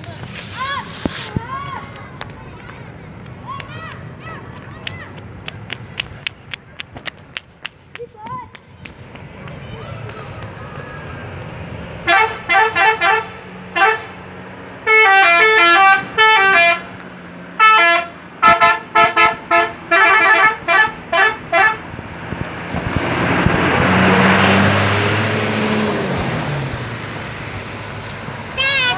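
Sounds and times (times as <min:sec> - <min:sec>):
bus driving past: 0:00.0 - 0:07.9, 0:08.6 - 0:28.9
multi-tone bus horn blasts: 0:12.0 - 0:22.0.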